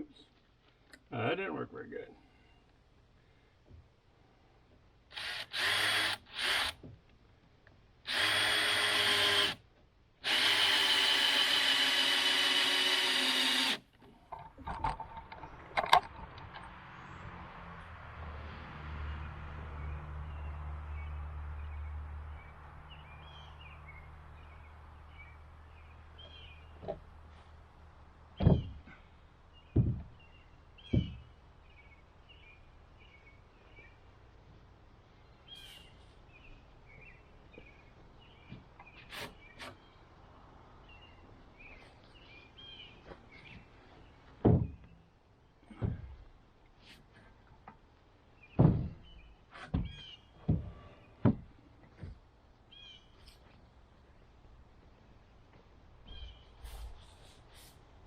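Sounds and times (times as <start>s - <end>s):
power drill whining: 5.1s - 6.8s, 8.1s - 9.6s, 10.2s - 13.8s
sharp knocks: 28.4s - 28.8s, 29.7s - 30.2s, 48.6s - 52.1s.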